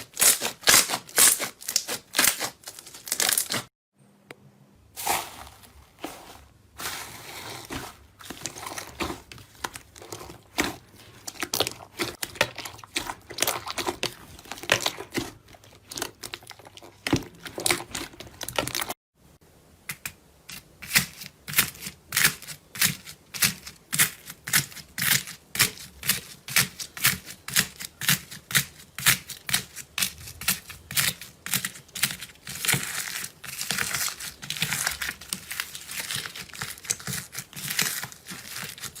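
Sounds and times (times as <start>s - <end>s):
slime crackling and popping: 0.2s - 3.7s.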